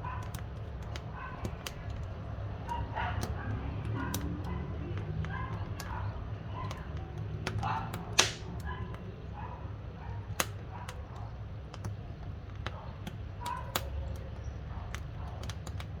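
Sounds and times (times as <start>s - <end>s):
wood fire crackling and popping: 7.4s - 8.7s.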